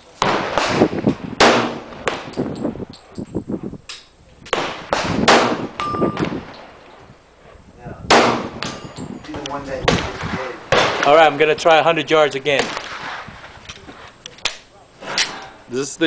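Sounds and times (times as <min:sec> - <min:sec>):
pistol shots with ringing echo: 0:00.2 - 0:02.6, 0:04.5 - 0:07.0, 0:08.1 - 0:11.1.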